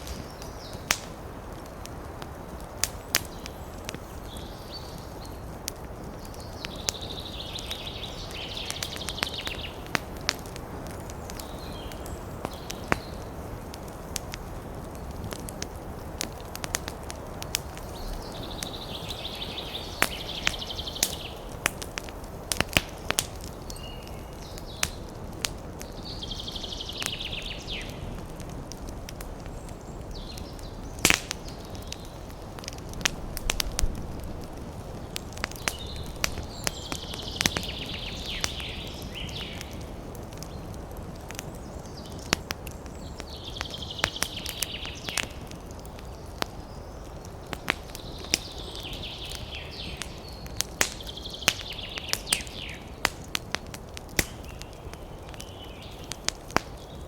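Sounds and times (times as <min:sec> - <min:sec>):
fire crackling and popping: 0:00.0 - 0:57.0
fire hissing: 0:00.0 - 0:57.0
wood fire burning: 0:00.0 - 0:57.0.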